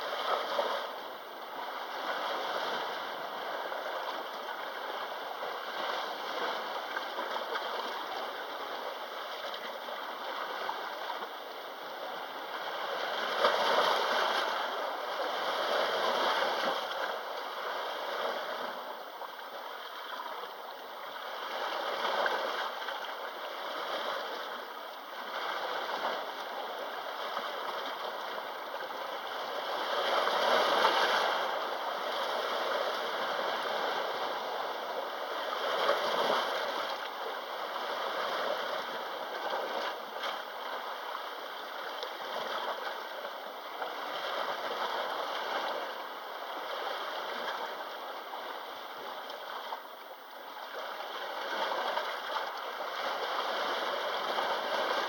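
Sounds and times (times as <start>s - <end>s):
sea waves washing onto shore: 20.5s - 55.0s.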